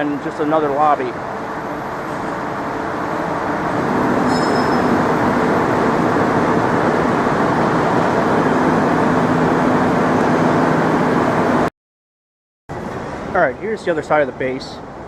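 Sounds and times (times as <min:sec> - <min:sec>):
loud mechanical rumble: 0:00.0 - 0:11.7.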